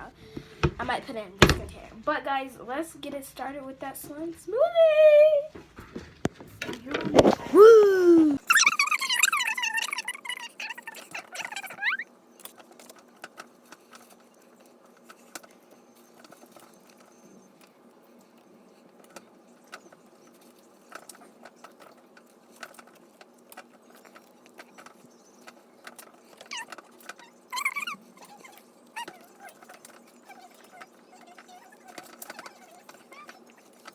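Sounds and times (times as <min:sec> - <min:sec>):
squeaky gliding sound: 0:08.4 - 0:12.1, 0:26.2 - 0:33.8.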